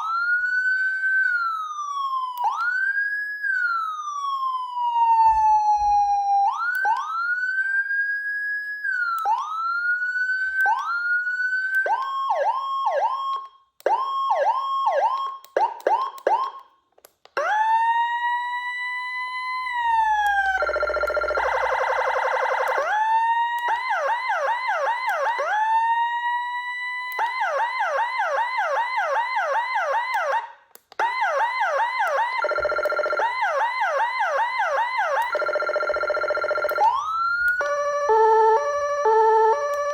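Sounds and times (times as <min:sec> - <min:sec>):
electronic siren wailing and yelping: 0:04.6 - 0:07.4, 0:17.4 - 0:39.9.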